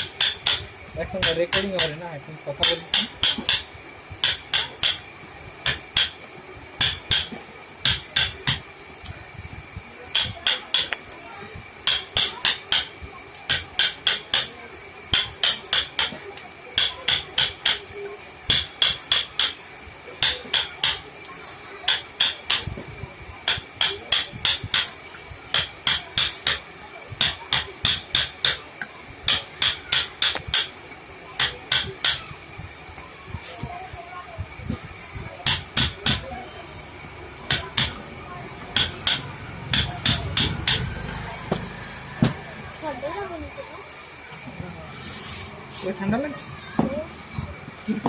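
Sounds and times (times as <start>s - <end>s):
hammer tapping on metal: 0.0s - 2.0s, 2.6s - 8.7s, 10.1s - 11.1s, 11.8s - 16.2s, 16.8s - 17.9s, 18.5s - 21.1s, 21.9s - 22.8s, 23.4s - 30.8s, 31.4s - 32.3s, 35.4s - 36.3s, 37.5s - 38.0s, 38.6s - 42.4s.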